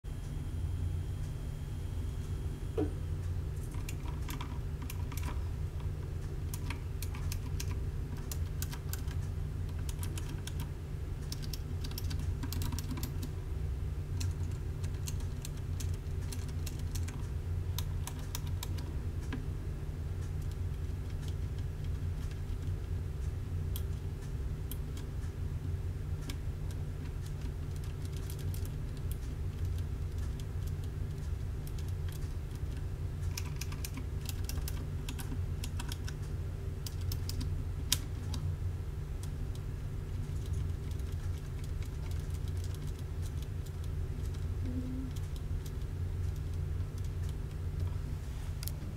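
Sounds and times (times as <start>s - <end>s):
steady low hum: 0.0s - 48.9s
mechanical keyboard typing: 3.6s - 5.5s, 6.4s - 13.3s, 14.2s - 19.4s, 26.2s - 36.2s, 36.8s - 38.4s, 39.2s - 47.9s.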